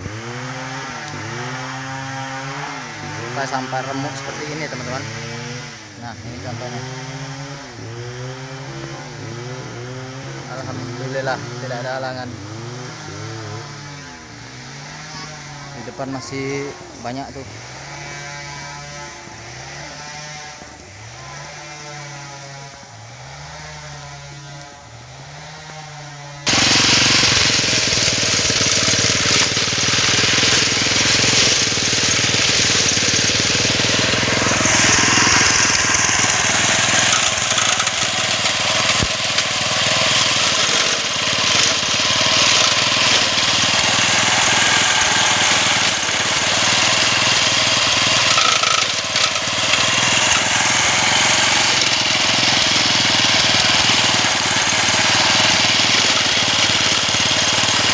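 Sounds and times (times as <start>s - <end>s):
small engine running hard: 0.0s - 57.9s
blade cutting through grass: 17.8s - 57.9s.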